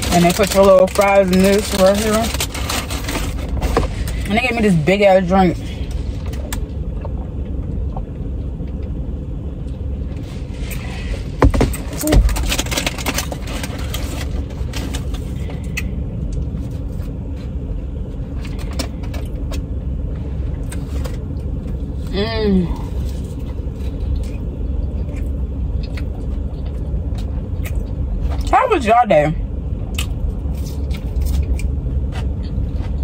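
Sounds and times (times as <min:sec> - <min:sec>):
plastic food containers crackling: 0:00.0 - 0:04.2, 0:11.6 - 0:15.3
steady low rumble: 0:00.0 - 0:33.0.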